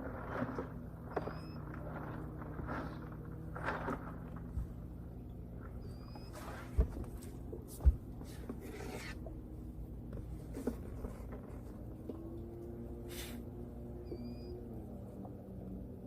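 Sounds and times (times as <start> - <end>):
rubbing and scraping: 0.0 - 4.8, 6.1 - 9.3
steady low hum: 0.0 - 16.0.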